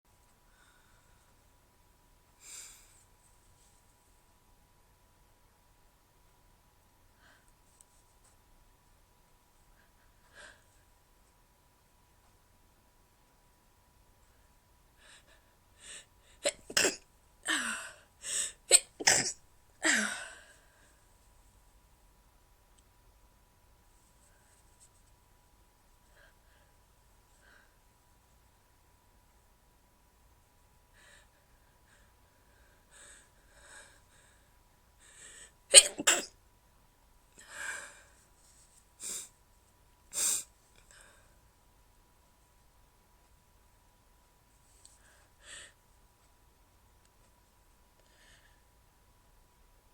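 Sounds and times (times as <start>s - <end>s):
woman breathing through nose: 17.6s - 18.6s, 31.9s - 35.6s.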